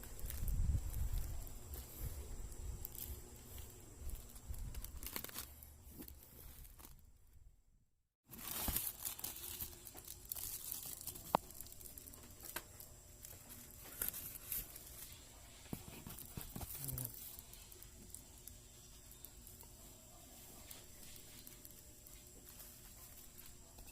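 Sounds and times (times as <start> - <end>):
packaging tearing and crinkling: 2.8 - 7.0, 8.3 - 19.6.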